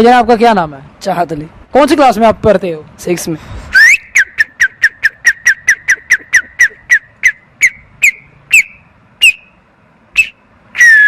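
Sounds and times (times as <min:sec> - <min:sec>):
boy whistling chirps: 0:03.7 - 0:09.5, 0:10.2 - 0:11.0.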